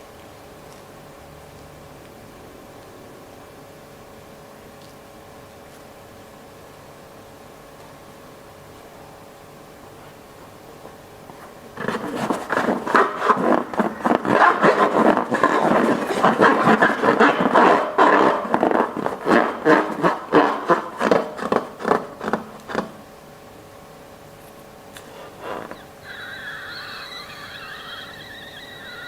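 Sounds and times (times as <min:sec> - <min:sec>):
air squealing from balloon neck: 0:25.1 - 0:29.0.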